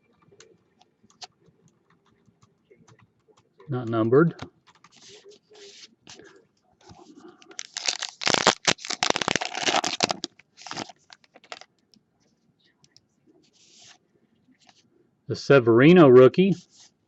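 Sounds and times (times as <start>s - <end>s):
card pack wrapper tearing and crinkling: 7.5s - 11.7s.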